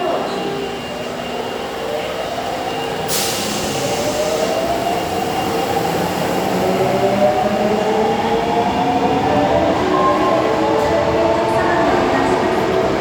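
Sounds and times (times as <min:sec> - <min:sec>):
air hiss: 0:03.1 - 0:04.6.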